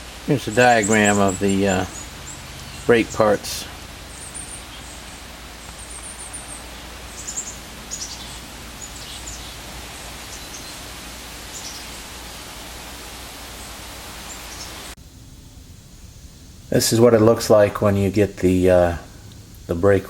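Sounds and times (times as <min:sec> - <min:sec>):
small birds chirping: 0:00.0 - 0:15.0
outdoor background hiss: 0:00.0 - 0:20.0.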